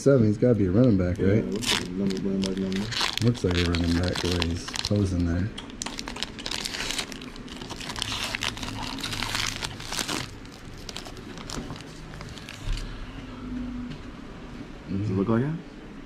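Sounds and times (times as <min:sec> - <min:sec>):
card packaging crinkling: 0:01.5 - 0:12.8.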